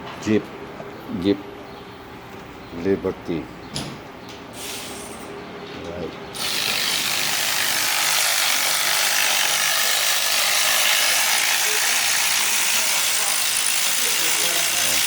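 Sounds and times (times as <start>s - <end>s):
ratchet wrench clicking: 6.4s - 15.0s.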